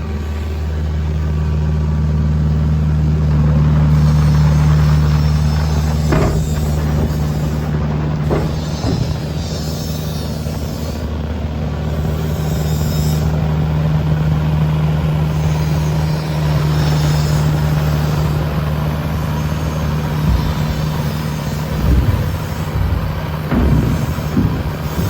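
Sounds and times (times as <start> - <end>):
heavy engine running: 0.0 - 25.0
knocks: 5.6 - 9.8, 20.0 - 25.0.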